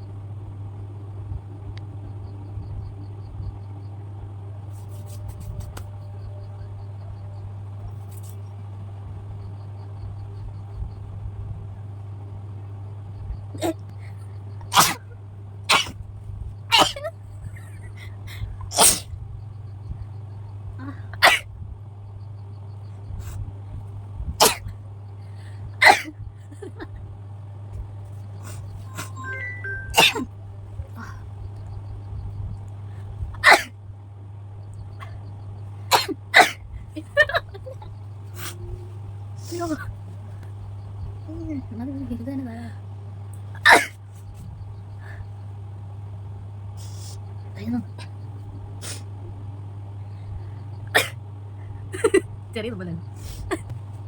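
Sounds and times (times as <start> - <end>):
steady low hum: 0.0 - 54.0
person sneezing: 14.7 - 15.0, 15.7 - 16.0, 18.7 - 19.1, 24.4 - 24.7, 25.8 - 26.1, 28.5 - 30.2, 33.4 - 33.7, 35.9 - 36.6, 43.6 - 44.0, 51.0 - 51.2
faint high chirps: 28.8 - 30.3
person sniffing: 48.8 - 49.0.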